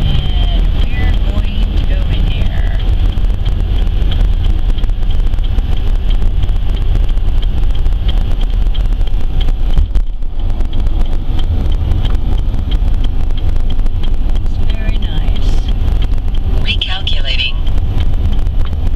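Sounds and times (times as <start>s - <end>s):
van engine and road noise: 0.0s - 18.9s.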